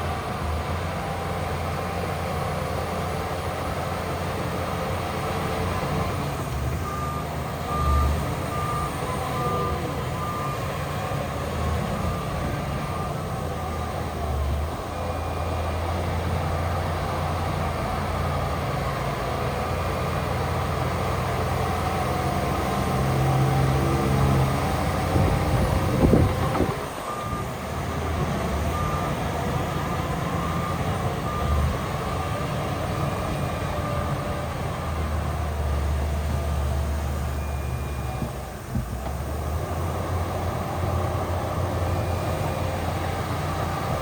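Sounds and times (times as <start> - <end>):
diesel construction machinery running: 0.0 - 44.0
reversing alarm beeping: 6.8 - 17.4, 21.6 - 34.4, 37.2 - 38.6.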